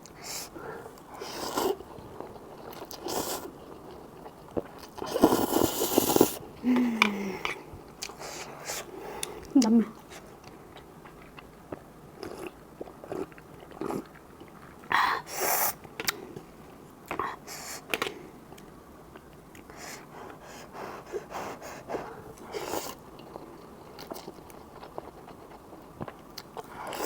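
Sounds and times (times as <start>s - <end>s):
person chewing noodles: 0.9s - 7.2s, 8.0s - 14.9s, 21.8s - 27.0s.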